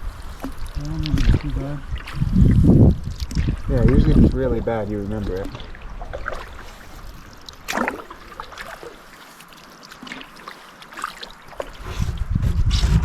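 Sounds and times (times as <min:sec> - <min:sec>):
water trickling and dripping: 0:00.0 - 0:12.4
paddle splashes: 0:00.0 - 0:13.0
low rumble: 0:11.8 - 0:13.0.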